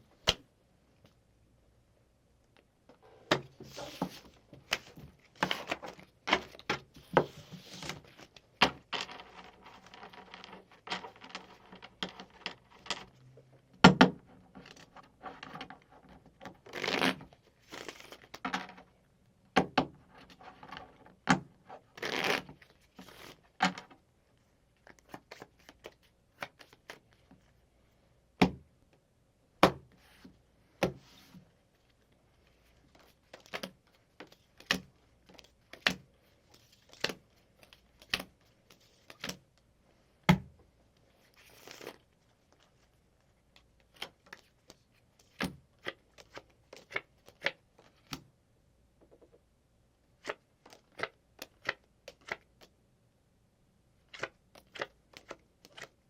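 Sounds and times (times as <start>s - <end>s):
playing cards shuffled and dealt: 0.2s - 0.4s, 3.0s - 13.1s, 16.4s - 18.8s, 21.9s - 23.9s, 29.6s - 39.4s, 41.2s - 42.9s, 43.5s - 48.3s, 50.2s - 52.7s, 54.1s - 56.0s.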